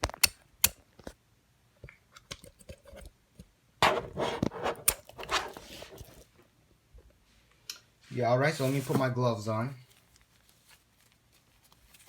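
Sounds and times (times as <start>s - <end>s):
crinkling and rustling: 3.8s - 6.5s, 8.5s - 12.0s.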